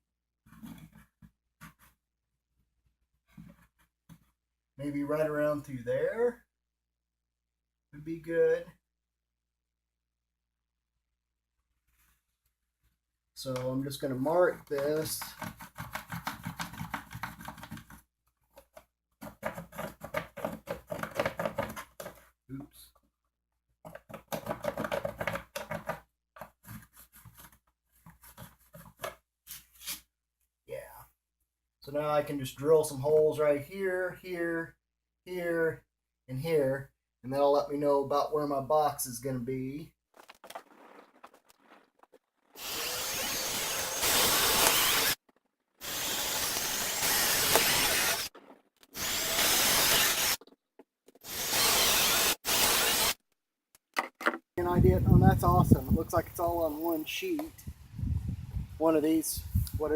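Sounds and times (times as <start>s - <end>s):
scratching and tapping on siding: 15.0s - 22.3s, 23.8s - 29.2s
power drill boring through siding: 42.5s - 45.2s, 45.8s - 48.3s, 48.9s - 50.4s, 51.2s - 53.2s.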